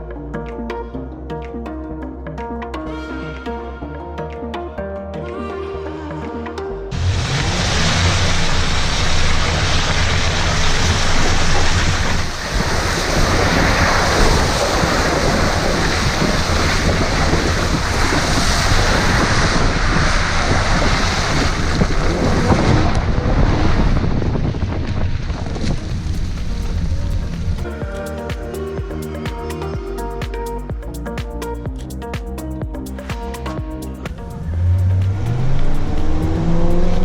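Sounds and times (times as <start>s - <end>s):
low rumble: 5.4s - 37.0s
wind buffeting microphone: 7.0s - 29.9s.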